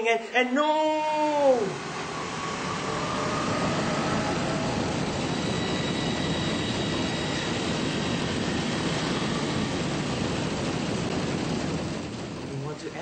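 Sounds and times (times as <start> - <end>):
loud rushing roar: 0.8 - 13.0
faint high whistling tones: 1.3 - 9.8.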